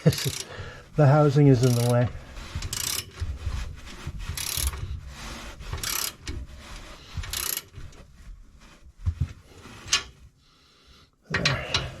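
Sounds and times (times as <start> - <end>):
ratchet pawl clicking: 0.1 - 0.5, 1.7 - 2.0, 2.6 - 3.1, 4.4 - 4.8, 5.8 - 6.2, 7.3 - 7.7.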